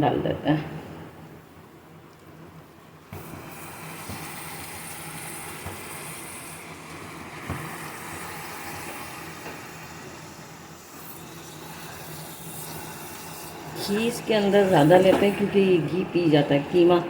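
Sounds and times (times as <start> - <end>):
meat and onions sizzling in pan: 3.2 - 14.0.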